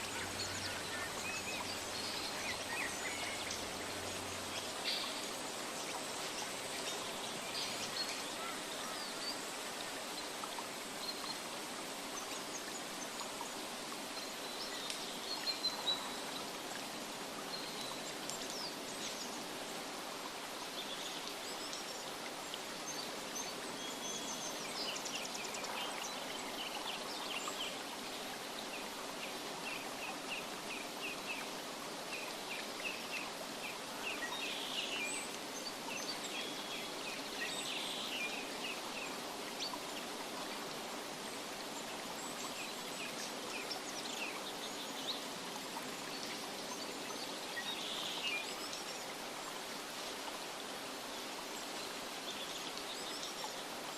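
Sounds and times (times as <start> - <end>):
stream rushing water: 0.0 - 53.9.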